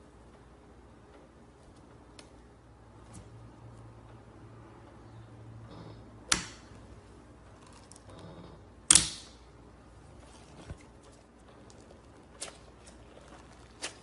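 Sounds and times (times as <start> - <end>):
slime smacking: 10.2 - 14.0.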